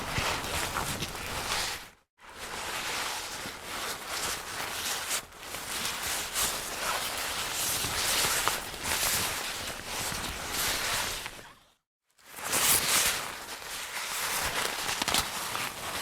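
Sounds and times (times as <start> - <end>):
jacket fabric rustling: 0.0 - 2.8.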